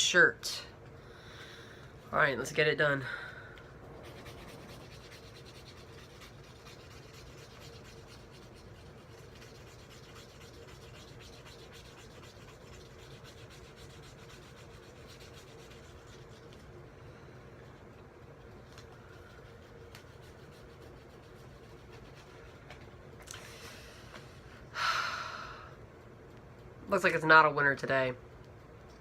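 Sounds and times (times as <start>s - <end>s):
coin scratching a card: 4.0s - 16.5s.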